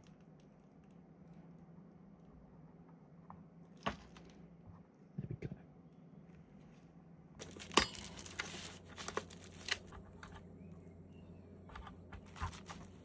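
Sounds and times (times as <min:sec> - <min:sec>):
sharp clicks of pc parts: 0:07.4 - 0:10.4
crinkly rustling: 0:07.4 - 0:10.5, 0:11.7 - 0:13.0.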